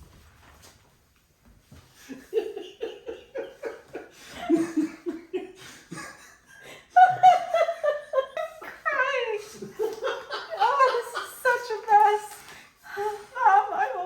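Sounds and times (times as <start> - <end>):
woman laughing: 2.1 - 6.3, 6.9 - 12.4.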